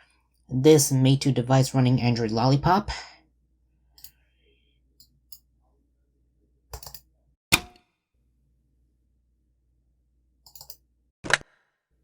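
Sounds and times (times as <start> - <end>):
computer mouse clicks: 6.8 - 7.0, 10.5 - 10.8.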